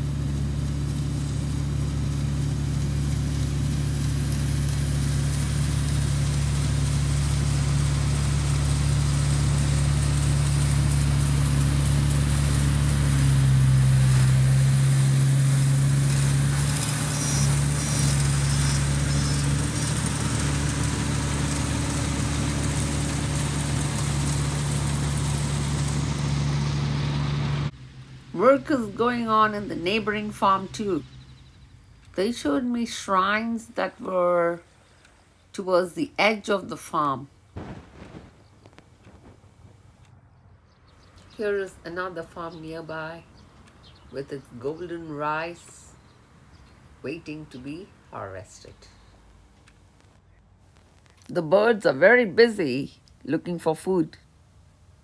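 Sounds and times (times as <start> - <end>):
farm machine engine running: 0.0 - 35.2, 36.5 - 40.1.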